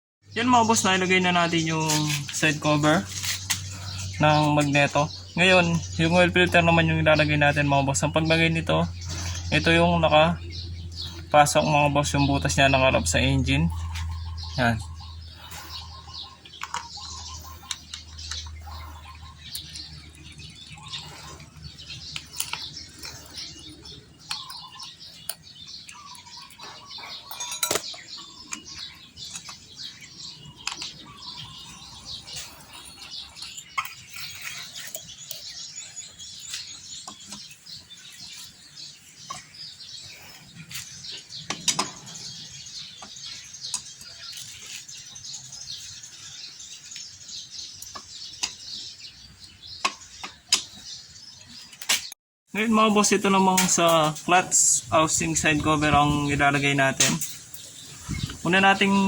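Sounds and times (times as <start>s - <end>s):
birds chirping: 0.2s - 59.0s.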